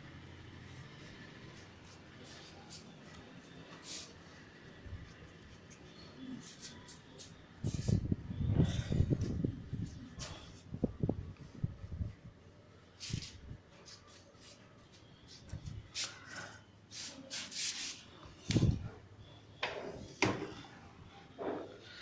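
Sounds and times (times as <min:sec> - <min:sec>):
polish rubbed onto paintwork: 0:00.6 - 0:04.2, 0:16.9 - 0:18.1.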